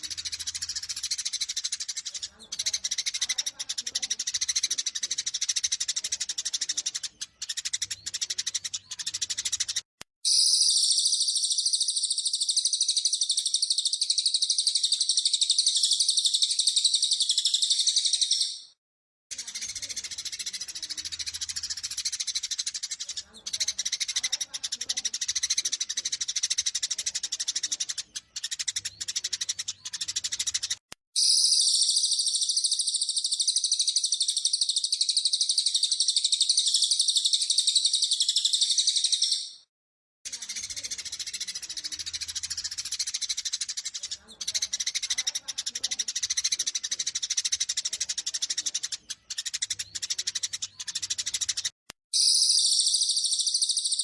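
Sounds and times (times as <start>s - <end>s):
high bird trill: 0.0s - 39.7s, 40.3s - 54.0s
sparrows chattering: 0.0s - 39.7s, 40.3s - 54.0s.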